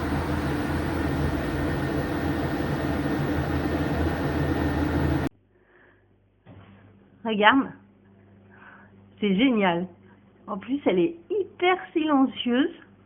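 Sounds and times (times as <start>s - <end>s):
washing machine running: 0.0s - 5.3s.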